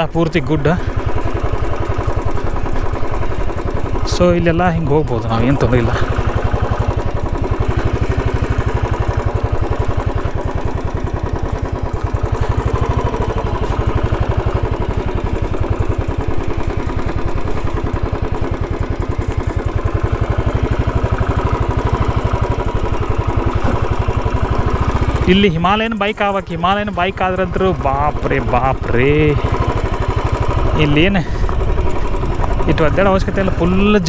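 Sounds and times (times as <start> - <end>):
motorcycle engine running: 0.0 - 34.0.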